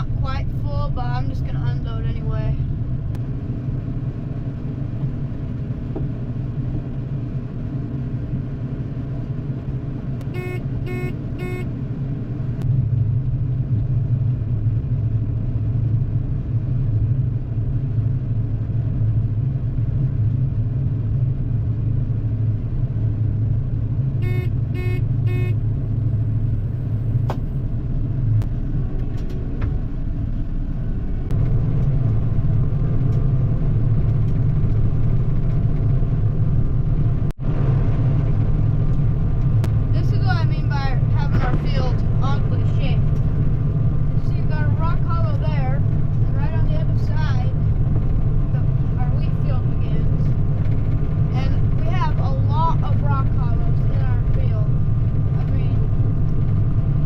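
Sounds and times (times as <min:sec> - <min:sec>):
farm vehicle engine humming: 0:00.0 - 0:57.0
short electronic beeps: 0:10.2 - 0:11.7, 0:24.2 - 0:25.6.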